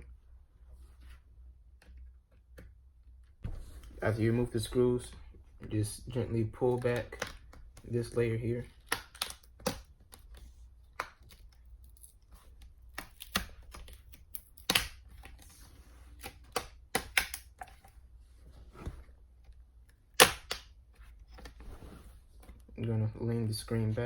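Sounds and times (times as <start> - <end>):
plastic clips clicking and snapping: 6.7 - 7.9, 8.7 - 11.6, 12.9 - 15.3, 16.2 - 17.7.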